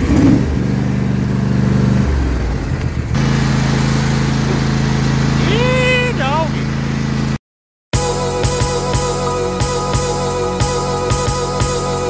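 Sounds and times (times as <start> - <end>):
lawn tractor engine running: 0.8 - 7.4.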